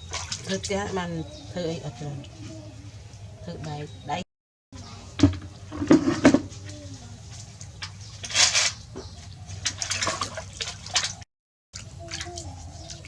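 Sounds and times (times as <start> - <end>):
bath water splashing and pouring: 9.6 - 11.2.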